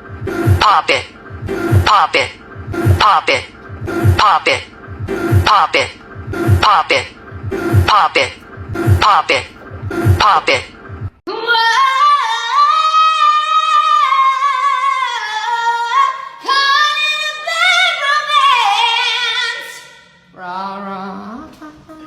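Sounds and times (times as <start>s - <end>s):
lower voice: 0.2s - 10.8s.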